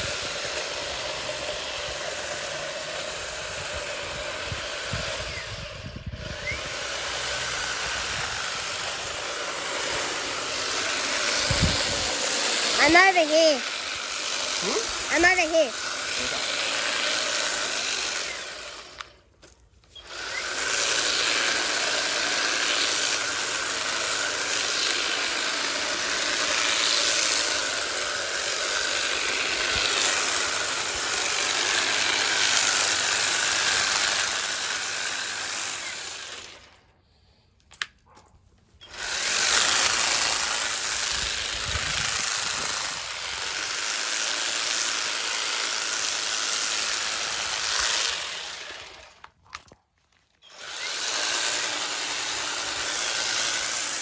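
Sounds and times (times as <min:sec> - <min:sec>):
hedge trimmer cutting hedge: 0:00.0 - 0:36.9, 0:38.8 - 0:49.8, 0:50.4 - 0:54.0.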